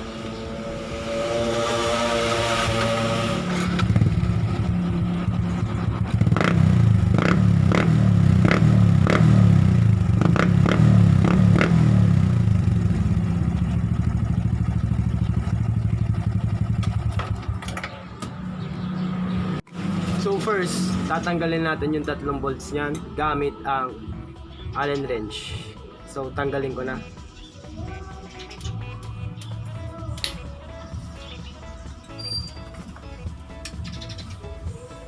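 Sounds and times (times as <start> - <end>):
motorcycle engine running: 0.0 - 22.0.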